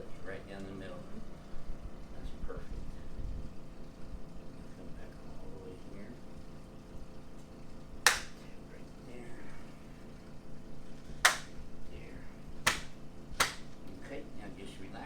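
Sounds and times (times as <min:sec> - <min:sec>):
short sharp snaps: 0:08.0 - 0:08.5, 0:11.2 - 0:11.6, 0:12.6 - 0:13.8.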